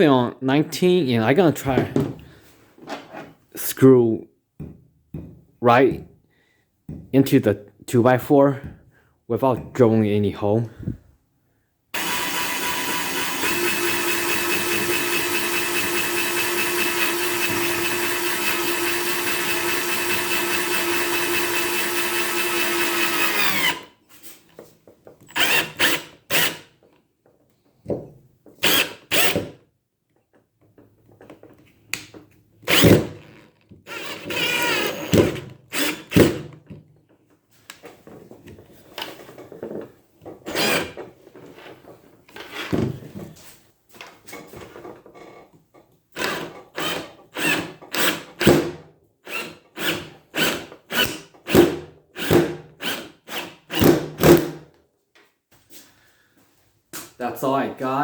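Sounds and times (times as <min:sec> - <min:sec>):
cordless drill driving screw: 0:12.0 - 0:24.0, 0:25.3 - 0:26.7, 0:28.6 - 0:29.5, 0:32.7 - 0:36.5, 0:40.5 - 0:41.0, 0:46.2 - 0:48.5, 0:49.2 - 0:51.6, 0:52.2 - 0:54.4.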